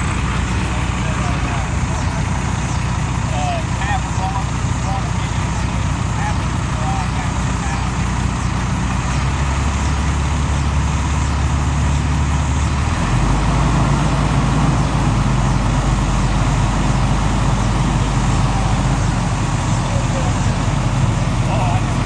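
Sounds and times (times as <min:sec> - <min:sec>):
heavy diesel engine running: 0:00.0 - 0:22.0.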